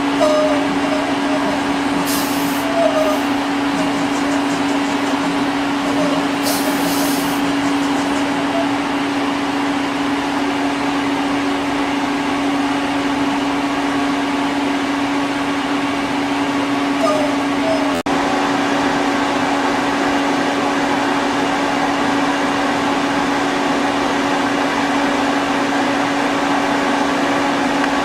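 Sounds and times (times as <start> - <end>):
lathe mechanical hum: 0.0 - 28.0
short hiss: 2.0 - 2.6, 6.4 - 7.4.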